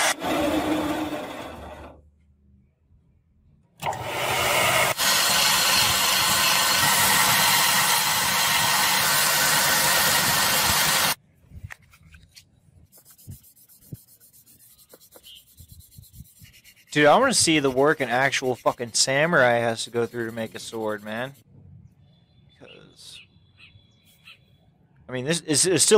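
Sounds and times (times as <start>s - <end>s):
abrasive sanding: 12.9s - 21.4s.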